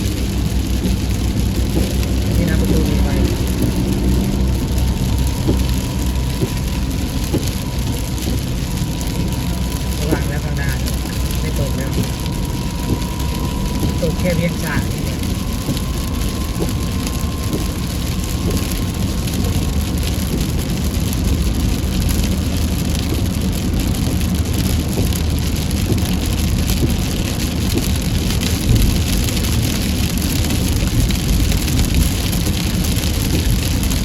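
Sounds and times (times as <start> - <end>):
car engine rumble: 0.0 - 34.0
heavy rain pelting: 0.0 - 34.0.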